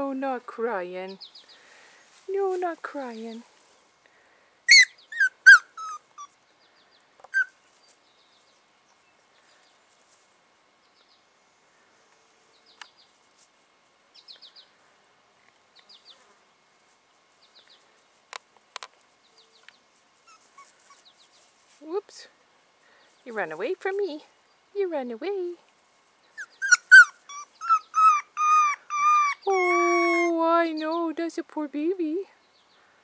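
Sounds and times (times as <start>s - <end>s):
puppy whimpering: 4.7s - 6.3s, 7.3s - 7.5s, 20.3s - 21.0s, 26.4s - 30.4s
bird chirps: 26.2s - 30.2s.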